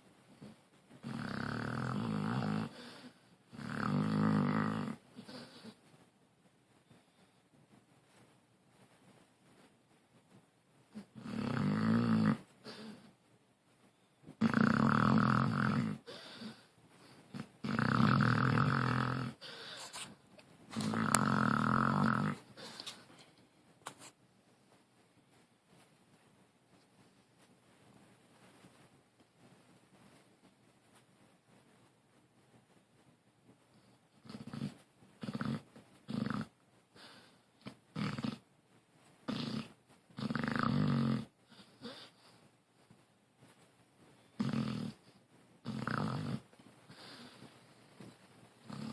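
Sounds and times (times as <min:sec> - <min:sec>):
person snoring: 0:01.0 - 0:05.4, 0:17.6 - 0:19.9, 0:20.8 - 0:22.8
rattling snores: 0:01.0 - 0:05.8, 0:11.1 - 0:13.0, 0:14.4 - 0:16.6, 0:17.3 - 0:20.1, 0:20.7 - 0:23.0, 0:34.2 - 0:36.5, 0:37.9 - 0:38.4, 0:39.3 - 0:42.1, 0:44.4 - 0:47.4, 0:48.6 - 0:48.9
soft breath: 0:02.7 - 0:03.4, 0:16.0 - 0:17.3, 0:19.4 - 0:20.2, 0:22.4 - 0:23.6, 0:46.8 - 0:48.3.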